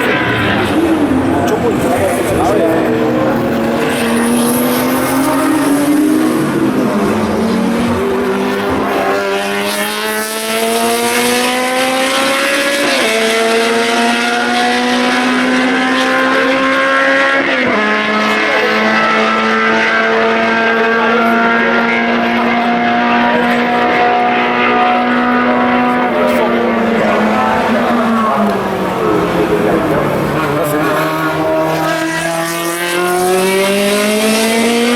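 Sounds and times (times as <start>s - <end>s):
racing car engine accelerating: 0.0s - 34.9s.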